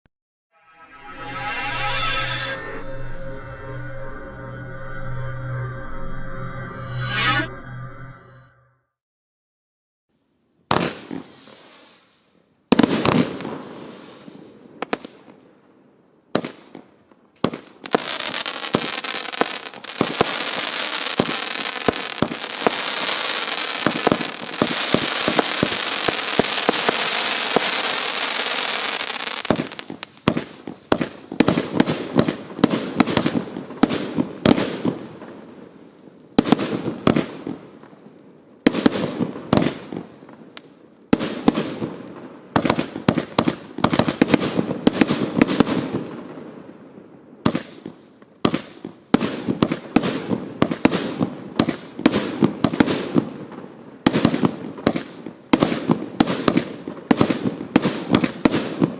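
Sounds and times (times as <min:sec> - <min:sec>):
firework crackle and hiss: 0:10.7 - 0:46.4, 0:47.4 - 0:58.9
firework bangs: 0:12.7 - 0:15.4, 0:17.4 - 0:38.0, 0:38.6 - 0:46.4, 0:47.5 - 0:58.9.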